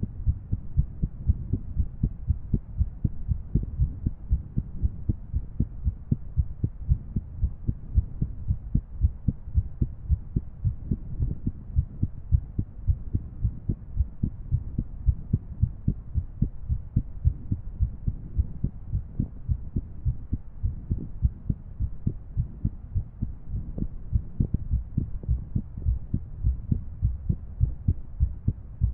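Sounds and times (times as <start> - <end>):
heartbeat thumps: 0.0 - 28.9.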